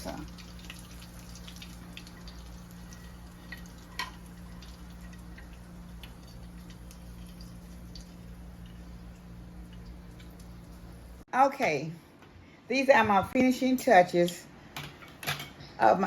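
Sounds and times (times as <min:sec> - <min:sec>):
steady low hum: 0:00.0 - 0:11.3
juice dripping onto steak: 0:00.1 - 0:11.2.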